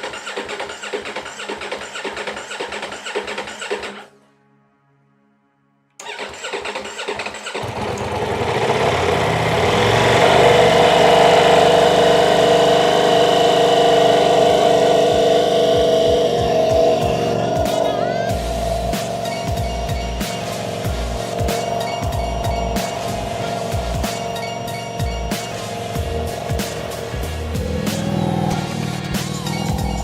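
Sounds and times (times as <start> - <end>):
electric starter cranking: 0.0 - 4.1, 6.0 - 30.0
motorcycle engine idling: 6.1 - 30.0.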